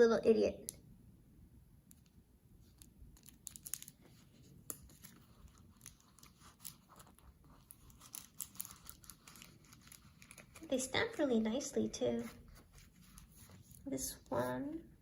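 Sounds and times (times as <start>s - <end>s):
paper and plastic packaging crinkling: 3.2s - 11.6s.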